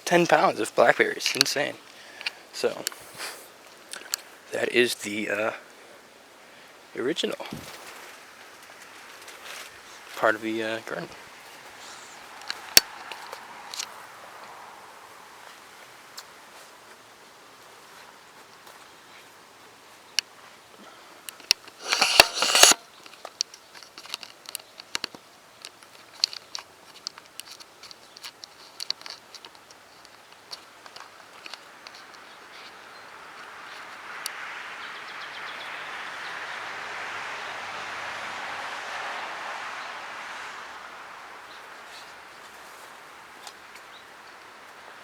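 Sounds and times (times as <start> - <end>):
plants crackling: 0.0 - 45.0
footsteps rustling through plants: 7.3 - 14.6, 15.4 - 20.8.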